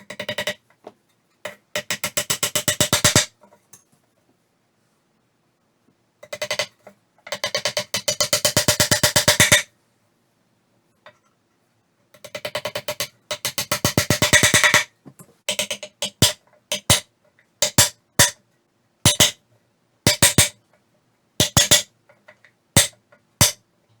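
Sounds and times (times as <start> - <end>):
tools knocking on wood: 21.4 - 21.8.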